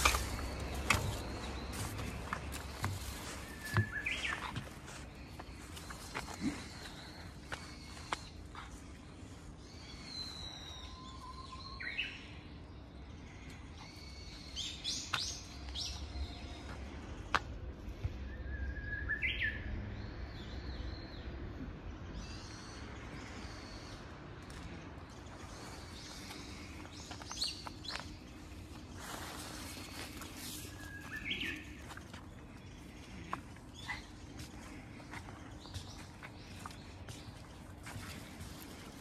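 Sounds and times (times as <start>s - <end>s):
warbler whistled song: 0.0s - 16.8s, 18.0s - 21.4s, 25.0s - 33.0s
small birds chirping: 0.0s - 39.0s.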